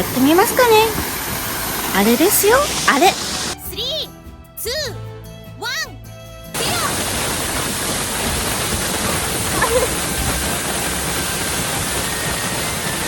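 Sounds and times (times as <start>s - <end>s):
waterfall roaring: 0.0s - 3.6s, 6.6s - 13.0s.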